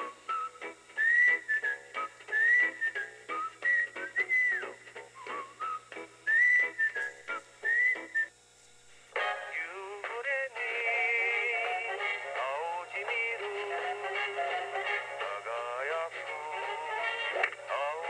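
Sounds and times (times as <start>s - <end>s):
whistled tune with plucked accompaniment: 0.0s - 8.3s
music with sung jingle: 9.1s - 18.0s.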